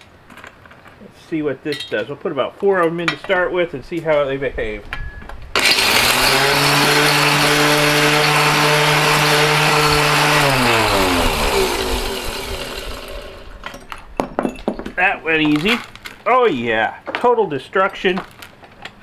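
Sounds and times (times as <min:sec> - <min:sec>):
ore crusher rattling: 0:05.5 - 0:17.2.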